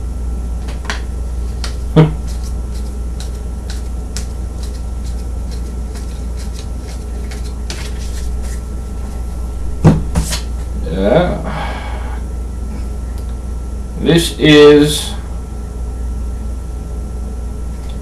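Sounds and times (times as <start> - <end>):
low electrical hum: 0.0 - 18.0
cards clicking and rustling: 0.7 - 9.2, 10.1 - 10.7.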